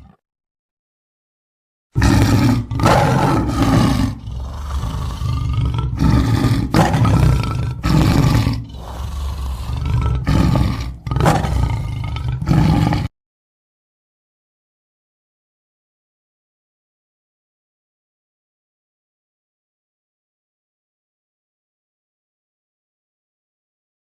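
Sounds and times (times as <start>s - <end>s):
tiger roaring: 2.0s - 13.1s.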